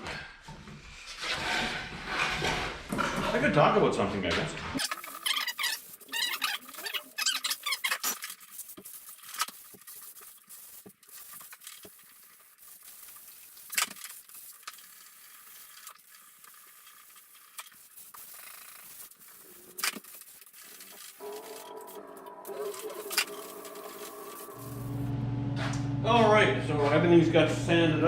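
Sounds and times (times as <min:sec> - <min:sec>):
high squeaky chirps: 0:04.8 - 0:08.1
hand sanding scratchy hiss: 0:04.8 - 0:24.8.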